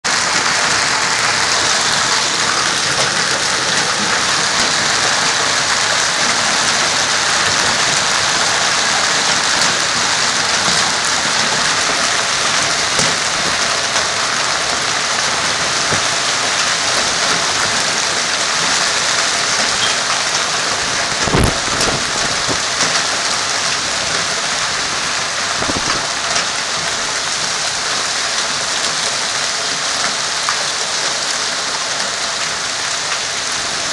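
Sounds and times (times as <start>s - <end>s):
hail and heavy rain falling: 0.1s - 33.9s.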